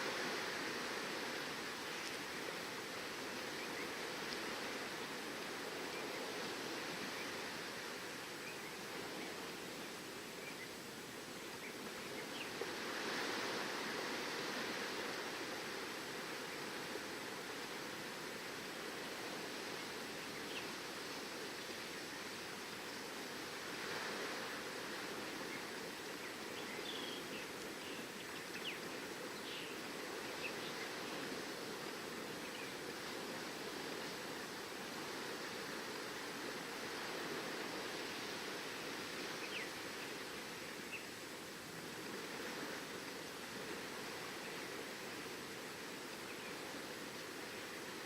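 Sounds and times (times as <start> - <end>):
ocean surf: 0.0 - 10.5, 11.1 - 48.0
wind: 0.0 - 48.0
faint bird chirps: 25.4 - 31.2.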